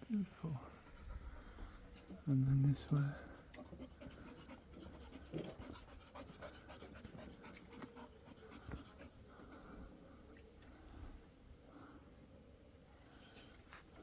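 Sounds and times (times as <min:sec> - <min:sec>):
dog panting: 0:00.7 - 0:10.4.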